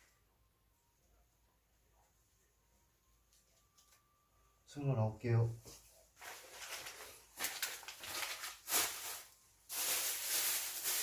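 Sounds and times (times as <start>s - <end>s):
rustling handling noise: 5.5s - 11.0s.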